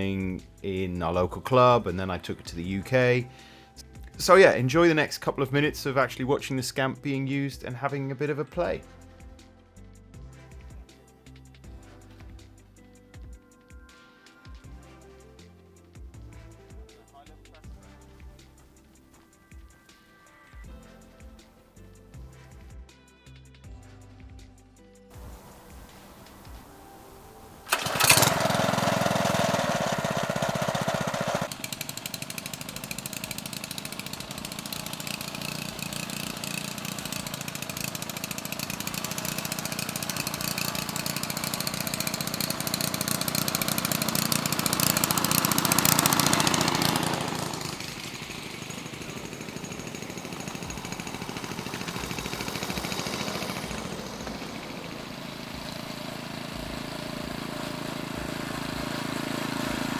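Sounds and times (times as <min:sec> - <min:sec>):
small locomotive engine running: 0:27.4 - 0:59.9.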